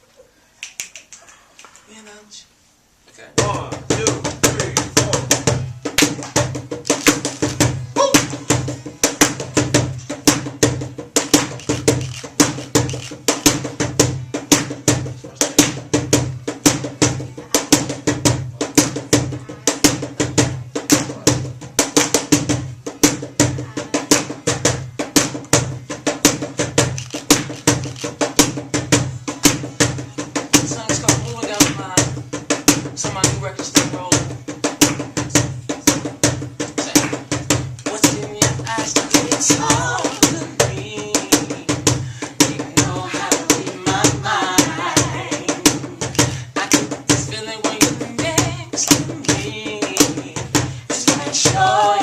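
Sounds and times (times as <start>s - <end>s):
live band playing r and b: 3.4s - 52.0s.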